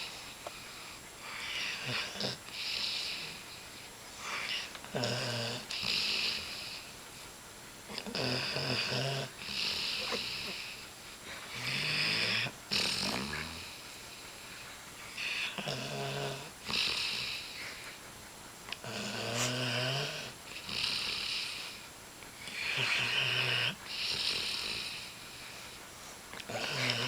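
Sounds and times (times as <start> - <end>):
breathy hiss: 0.0 - 27.0
dog snoring: 1.2 - 3.6, 4.2 - 6.9, 7.9 - 14.5, 15.1 - 17.8, 18.7 - 21.8, 22.4 - 25.7, 26.4 - 27.0.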